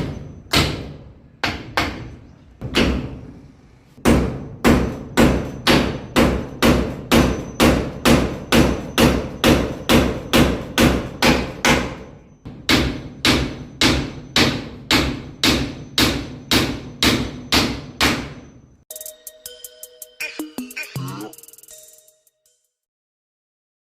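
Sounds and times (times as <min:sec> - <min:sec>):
hammer driving a nail: 0:00.0 - 0:03.2, 0:04.0 - 0:18.5.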